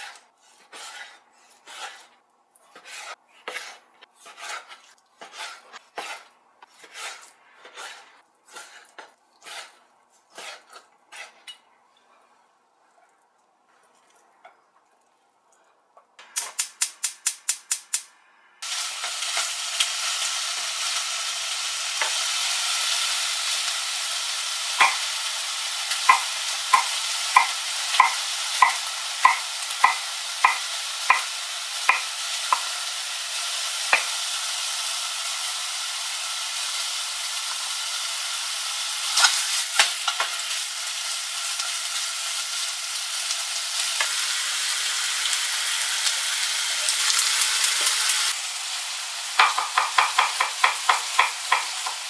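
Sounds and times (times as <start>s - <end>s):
food sizzling in a frying pan: 18.6s - 52.0s
utensil knocking against pan: 24.8s - 25.0s, 26.1s - 31.3s, 31.9s - 32.7s, 49.4s - 52.0s.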